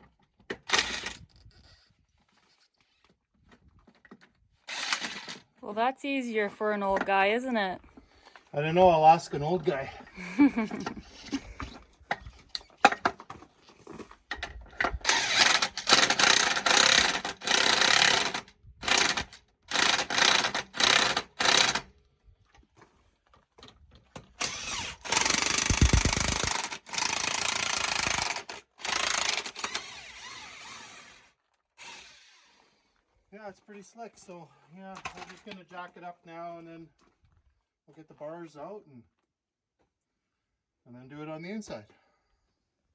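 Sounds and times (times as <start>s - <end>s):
bead breaker machine running: 4.7s - 5.3s, 15.1s - 21.8s, 24.4s - 31.0s.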